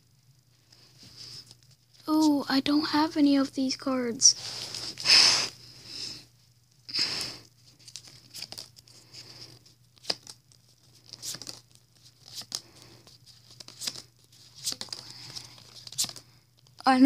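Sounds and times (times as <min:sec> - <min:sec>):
cards and foil wrapping crinkling: 0:07.1 - 0:16.8.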